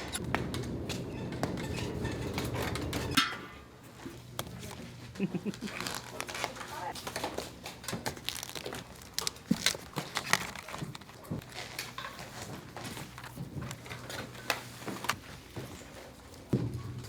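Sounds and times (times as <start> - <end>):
plastic containers clicking and crinkling: 4.1 - 16.6.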